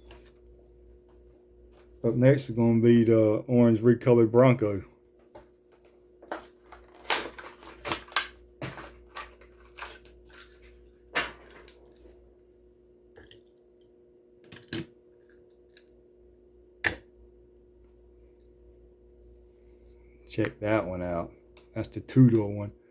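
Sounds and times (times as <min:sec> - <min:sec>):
plastic packaging crackling: 0:06.3 - 0:10.7.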